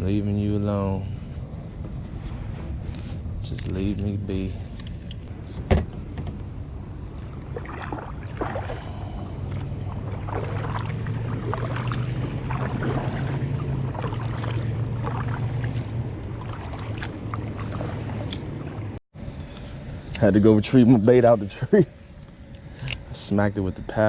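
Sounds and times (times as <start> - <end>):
steady low hum: 0.0 - 24.0
paddle splashes: 7.0 - 19.0.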